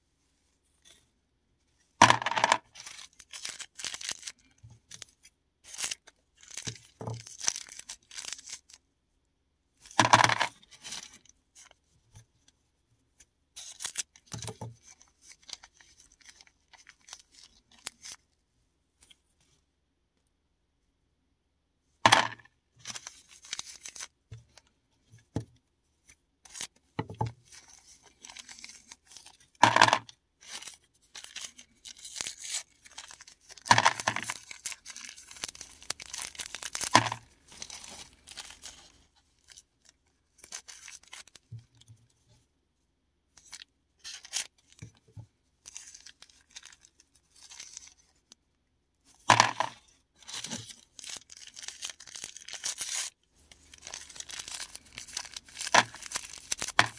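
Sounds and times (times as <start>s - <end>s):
mothballs crunching by hand: 53.6s - 56.9s.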